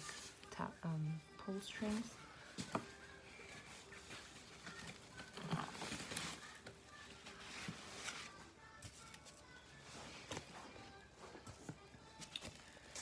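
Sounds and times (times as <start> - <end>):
packaging rustling and clicking: 2.5 - 9.4.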